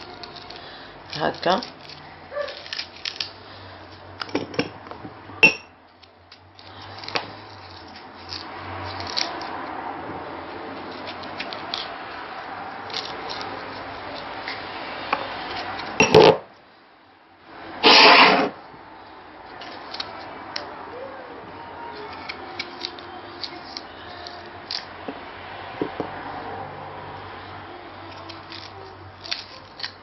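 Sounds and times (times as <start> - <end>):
loud noisy burst: 17.8 - 18.5.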